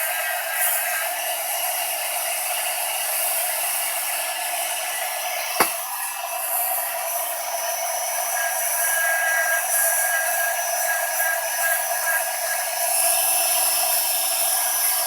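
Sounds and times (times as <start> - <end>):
sharp click: 5.6 - 5.8.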